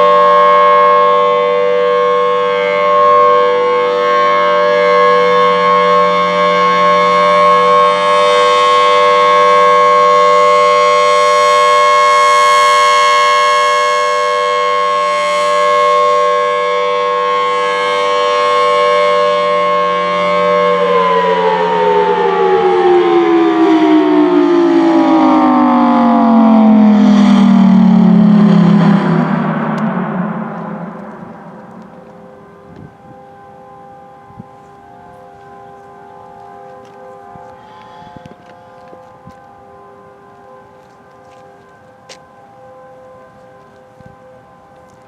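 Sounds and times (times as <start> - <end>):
warning siren alert tone: 0.0 - 45.0.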